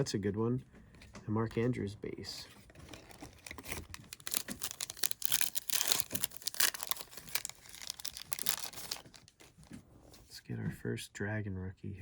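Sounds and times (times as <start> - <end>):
foil wrapper crinkling and tearing: 2.7 - 9.5.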